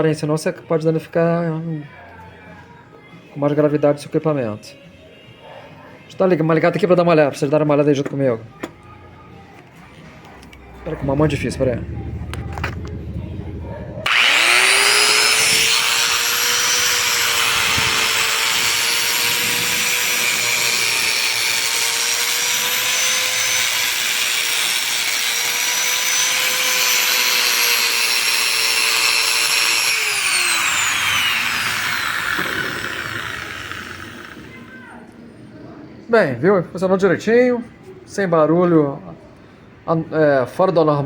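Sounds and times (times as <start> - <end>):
angle grinder whining: 10.4 - 34.8.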